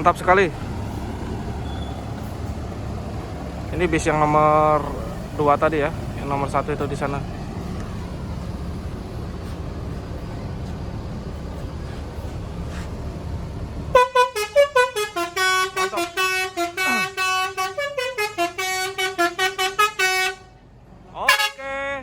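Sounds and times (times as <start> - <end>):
steady low rumble: 0.0 - 14.0
bus musical horn melody: 13.9 - 21.7.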